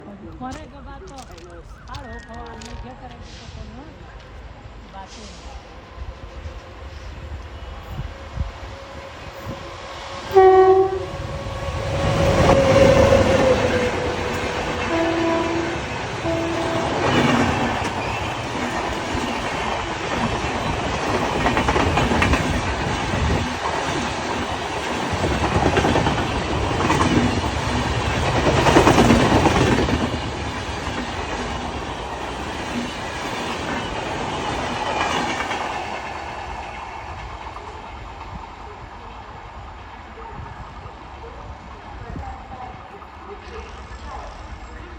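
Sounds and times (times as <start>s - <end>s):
train coaches rattling over rails: 0.1s - 44.9s
train horn blast: 7.6s - 18.2s.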